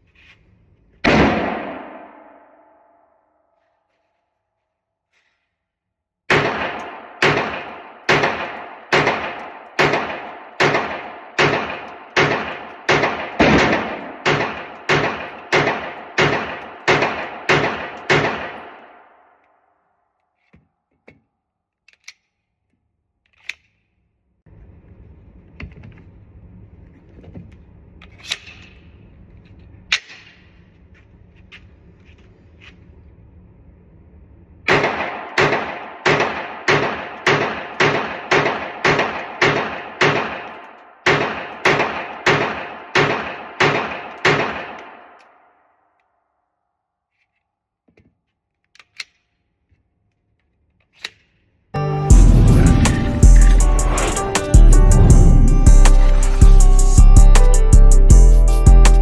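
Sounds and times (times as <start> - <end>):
pistol shots echoing indoors: 1.0 - 20.4, 34.7 - 46.6
pistol clicks: 21.8 - 22.5, 23.2 - 24.0, 48.6 - 49.5
low rushing noise: 51.8 - 57.9.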